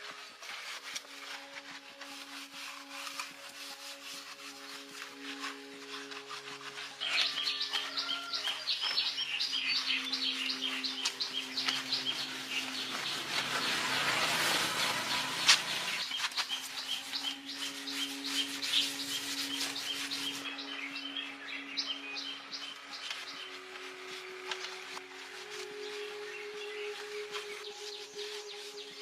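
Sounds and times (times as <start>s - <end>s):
small birds chirping: 6.8s - 24.4s.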